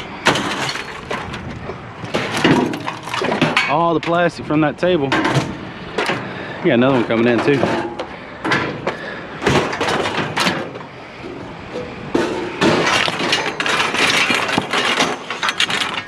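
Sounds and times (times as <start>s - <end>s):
scrap metal clanging: 0.3s - 3.8s.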